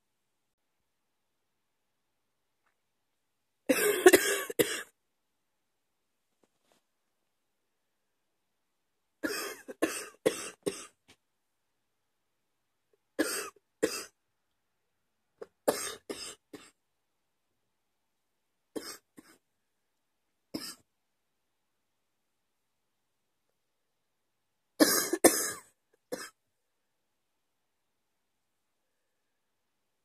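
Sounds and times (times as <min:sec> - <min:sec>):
woman coughing: 0:03.7 - 0:04.9, 0:09.2 - 0:10.9, 0:13.2 - 0:14.1, 0:15.7 - 0:16.7, 0:24.8 - 0:26.4.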